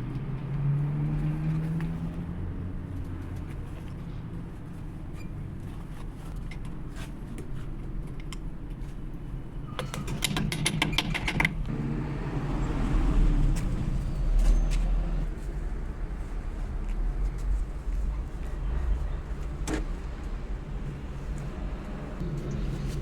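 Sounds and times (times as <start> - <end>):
steady low rumble: 11.7 - 23.0.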